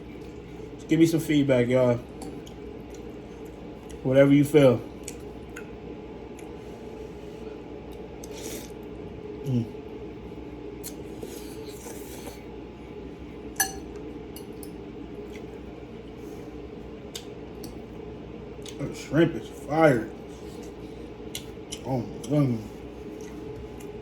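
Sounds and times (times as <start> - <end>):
low background hum: 0.0 - 24.0
utensil clinking against a bowl: 13.6 - 14.7.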